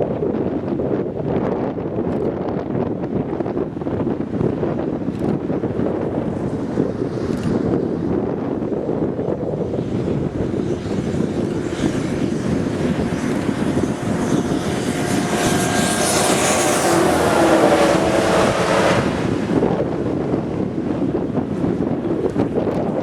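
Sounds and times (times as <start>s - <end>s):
wind buffeting microphone: 0.0s - 23.0s
passing engine: 9.6s - 22.4s.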